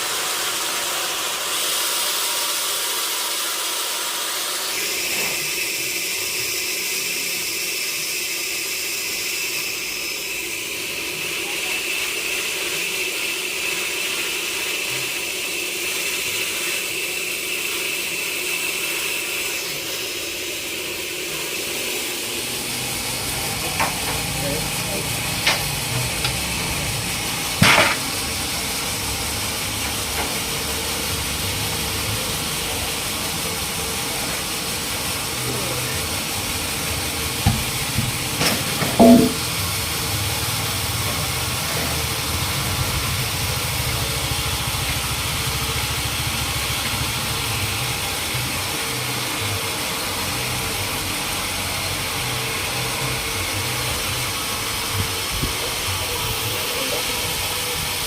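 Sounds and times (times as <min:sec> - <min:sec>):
sawmill machinery engine running: 0:00.0 - 0:58.0
sharp knocks: 0:38.4 - 0:39.4.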